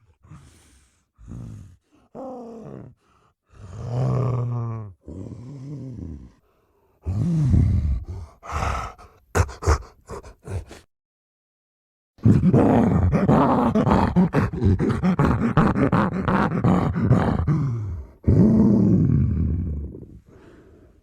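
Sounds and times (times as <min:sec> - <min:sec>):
gorilla deep groan: 0:01.2 - 0:03.0, 0:03.6 - 0:10.9, 0:12.2 - 0:20.4
gorilla grunts: 0:07.0 - 0:10.9, 0:12.2 - 0:20.2
gorilla roaring grunts: 0:07.0 - 0:10.9, 0:12.2 - 0:20.2.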